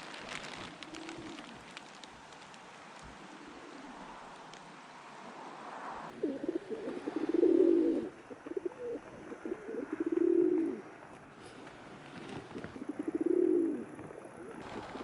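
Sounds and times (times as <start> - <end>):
pigeon cooing: 0.7 - 1.6, 6.1 - 11.0, 12.7 - 15.0.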